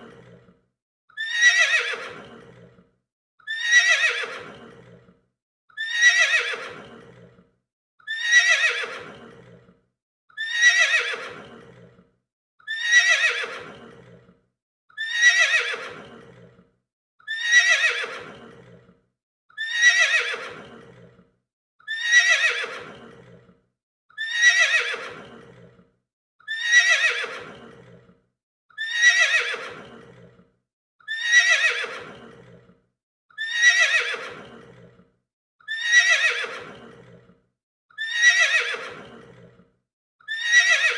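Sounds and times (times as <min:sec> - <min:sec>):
horse whinnying: 0:01.2 - 0:02.8, 0:03.5 - 0:05.0, 0:05.8 - 0:07.4, 0:08.1 - 0:09.6, 0:10.4 - 0:12.0, 0:12.7 - 0:13.9, 0:15.0 - 0:16.6, 0:17.3 - 0:18.8, 0:19.6 - 0:21.1, 0:21.9 - 0:23.4, 0:24.2 - 0:25.7, 0:26.5 - 0:28.0, 0:28.8 - 0:30.3, 0:31.1 - 0:32.5, 0:33.4 - 0:34.9, 0:35.7 - 0:37.2, 0:38.0 - 0:39.5, 0:40.3 - 0:40.9.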